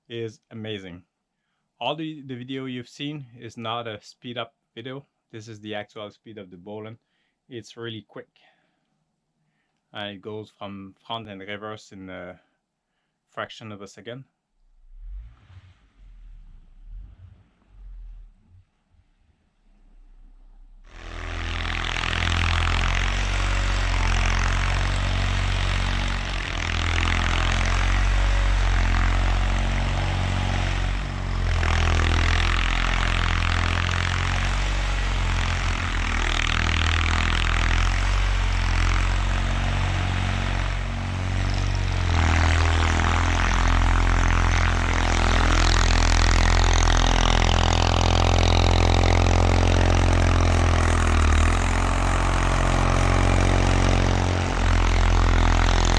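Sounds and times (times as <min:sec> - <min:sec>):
tractor engine running: 0:20.0 - 0:55.9.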